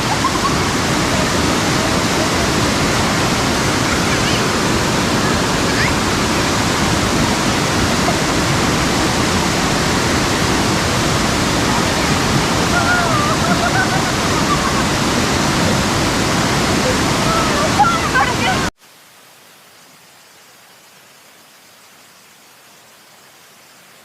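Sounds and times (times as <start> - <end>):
waterfall rushing: 0.0 - 18.8.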